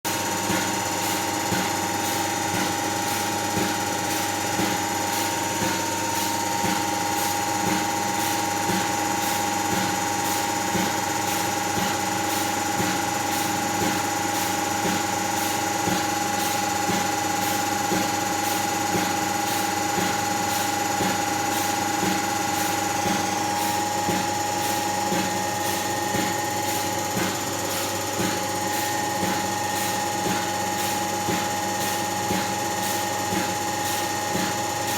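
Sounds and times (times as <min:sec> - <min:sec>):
diesel engine knocking: 0:00.4 - 0:27.4.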